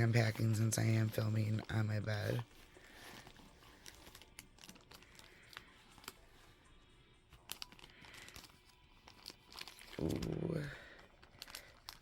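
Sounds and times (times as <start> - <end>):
quiet background music: 0.0 - 12.0
packaging crinkling and clicking: 2.8 - 6.2, 7.4 - 12.0.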